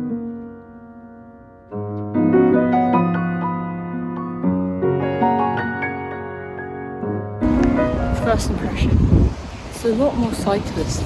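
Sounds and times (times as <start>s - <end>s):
piano music: 0.0s - 10.4s.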